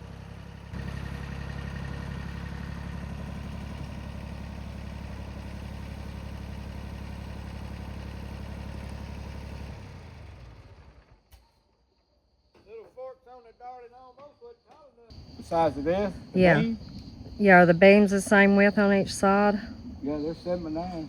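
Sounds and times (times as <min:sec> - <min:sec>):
tractor engine running: 0:00.0 - 0:11.4, 0:15.1 - 0:21.0.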